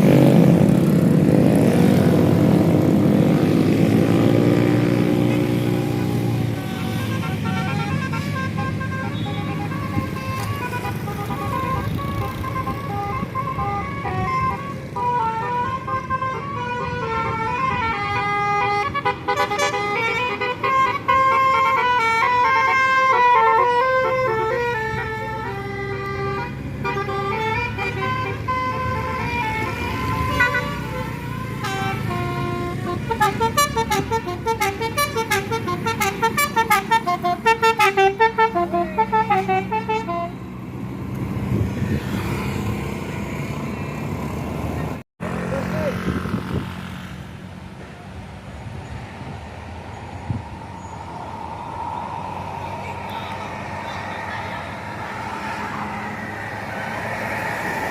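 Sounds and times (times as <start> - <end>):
multi-tone bus horn melody: 0.0 - 40.8
bus engine running: 0.0 - 57.9.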